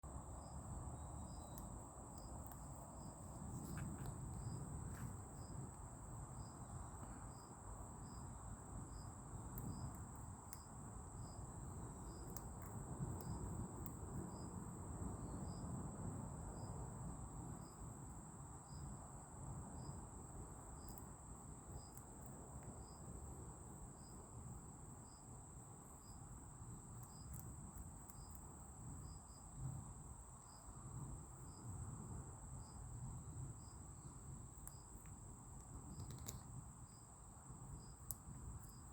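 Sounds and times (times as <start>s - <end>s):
insect high-pitched trill: 0.3s - 14.5s, 19.7s - 38.9s
insect short chirp: 0.4s - 12.4s, 22.8s - 38.9s.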